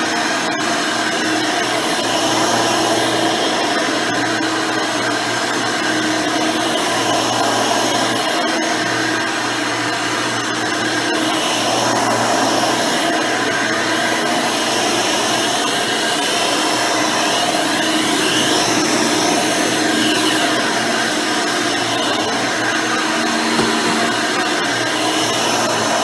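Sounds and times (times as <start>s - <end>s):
vacuum cleaner running: 16.6s - 26.0s.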